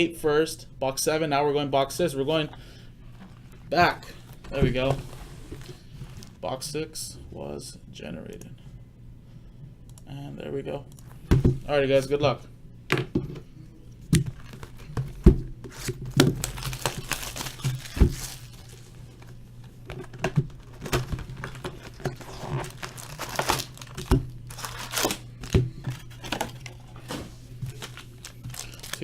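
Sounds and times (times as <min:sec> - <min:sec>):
low steady hum: 0:00.0 - 0:29.0
packaging crinkling and tearing: 0:15.7 - 0:19.4, 0:20.5 - 0:29.0.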